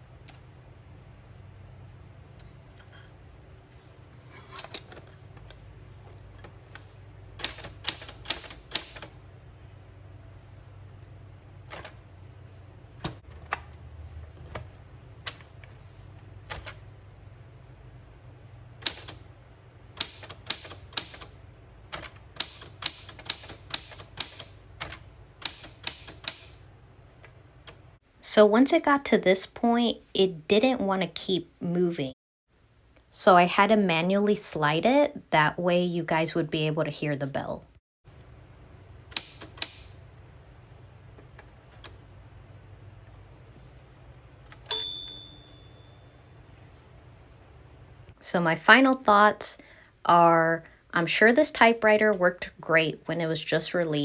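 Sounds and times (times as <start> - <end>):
manual typewriter typing: 7.4 - 9.2, 16.4 - 16.9, 18.8 - 19.2, 20.0 - 26.6, 39.1 - 40.0.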